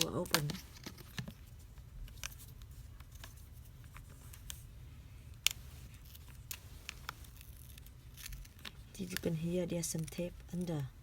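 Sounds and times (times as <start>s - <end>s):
low steady hum: 0.0s - 11.0s
adhesive tape clicking and crackling: 5.3s - 10.9s.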